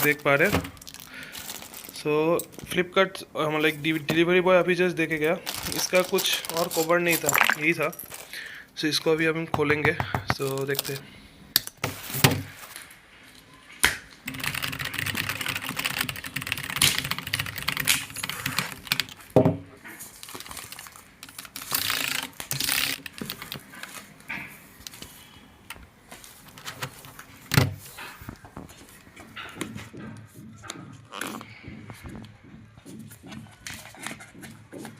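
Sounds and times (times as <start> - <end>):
packaging rustling and tearing: 0.0 - 2.6, 5.4 - 8.3, 20.0 - 25.2.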